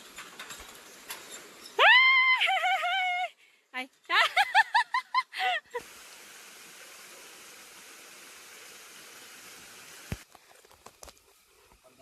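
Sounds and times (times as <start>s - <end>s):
steady hiss: 4.5s - 12.0s.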